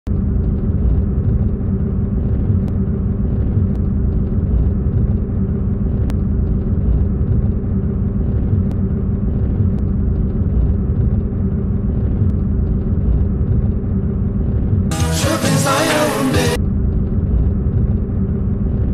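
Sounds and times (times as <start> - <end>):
vehicle engine rumbling: 0.0 - 18.9.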